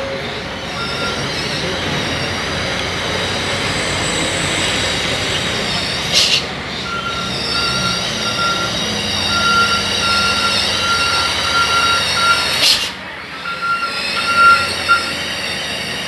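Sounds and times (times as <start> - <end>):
heavy truck engine running: 0.0 - 16.0
warning beeper: 0.7 - 2.4, 6.8 - 15.5.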